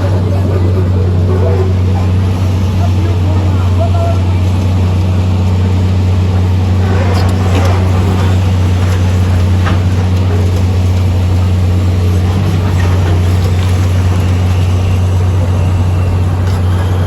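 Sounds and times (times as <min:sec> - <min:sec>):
heavy machine engine humming: 0:00.0 - 0:17.0
scraping clatters: 0:06.3 - 0:14.7.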